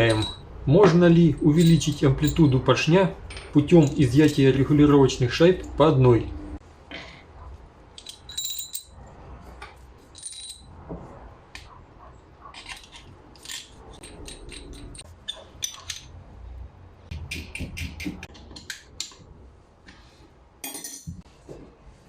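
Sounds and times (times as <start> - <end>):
small metal parts clicking: 1.4 - 2.6, 7.9 - 9.0, 12.5 - 16.1.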